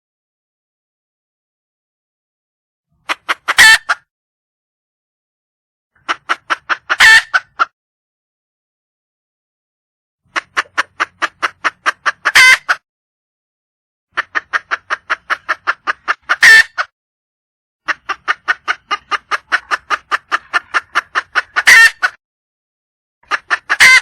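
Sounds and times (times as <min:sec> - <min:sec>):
hen clucking rapidly: 0:02.9 - 0:04.0, 0:06.0 - 0:07.7, 0:10.3 - 0:12.8, 0:14.1 - 0:16.9, 0:17.8 - 0:22.2, 0:23.2 - 0:24.0
hen squawking: 0:10.4 - 0:12.8, 0:14.2 - 0:16.9, 0:17.8 - 0:22.1, 0:23.3 - 0:24.0.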